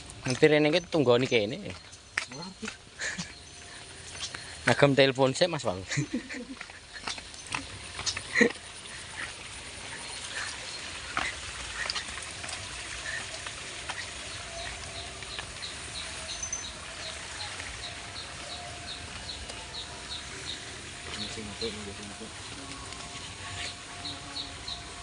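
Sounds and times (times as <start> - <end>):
background hiss: 0.0 - 25.0.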